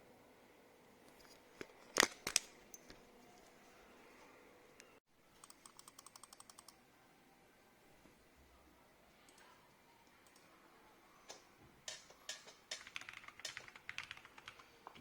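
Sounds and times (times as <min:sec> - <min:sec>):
mechanical keyboard clacking: 0:11.3 - 0:15.0.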